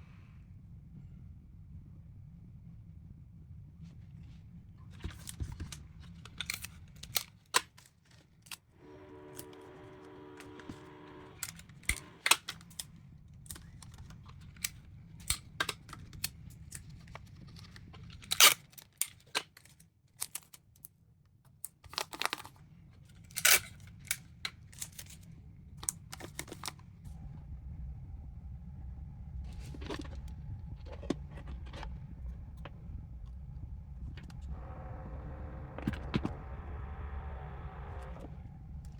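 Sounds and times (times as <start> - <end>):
steady low hum: 0.0 - 7.0, 22.6 - 38.9
steady tone: 27.1 - 38.9.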